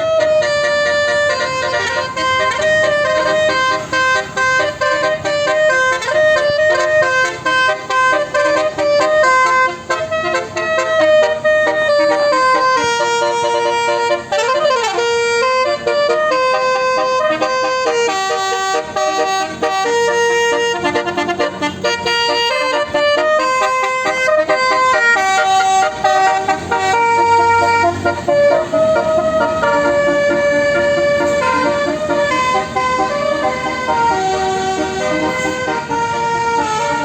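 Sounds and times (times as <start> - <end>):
musical bus air horn melody: 0.0 - 37.0.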